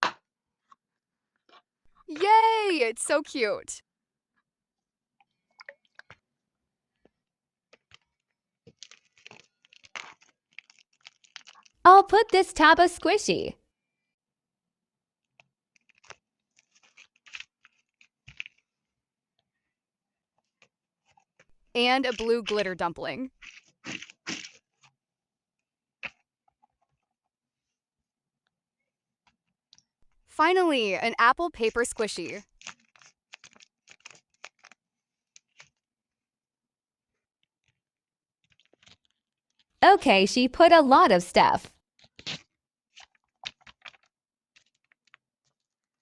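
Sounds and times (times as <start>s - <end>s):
soft rustles of plastic packaging: 6.9s - 11.8s, 15.3s - 18.8s, 32.3s - 35.9s, 38.4s - 39.7s, 42.0s - 46.0s
fidget toys crinkling and tapping: 7.7s - 12.3s, 15.3s - 18.7s, 31.6s - 35.8s, 38.4s - 39.7s, 42.0s - 46.0s.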